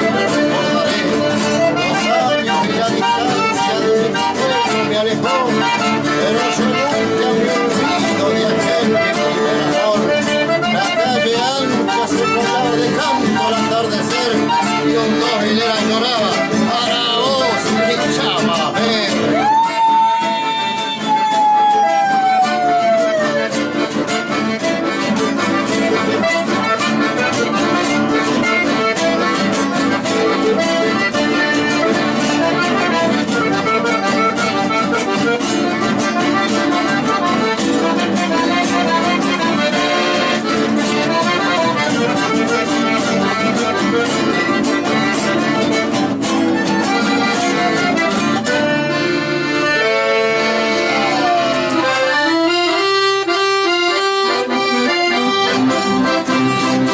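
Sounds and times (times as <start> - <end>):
accordion-led folk music: 0.0 - 56.9
fast plucked strings: 0.0 - 56.9.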